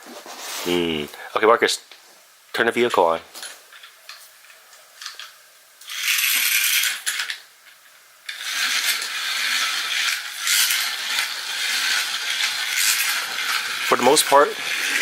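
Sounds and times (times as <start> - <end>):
toy car rattling on plastic track: 5.0 - 7.4, 8.3 - 15.0.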